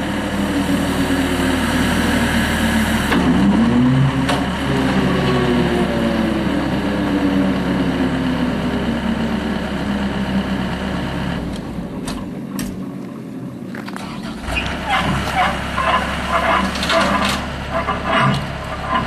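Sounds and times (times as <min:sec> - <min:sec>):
mower machine whine: 0:00.0 - 0:11.8.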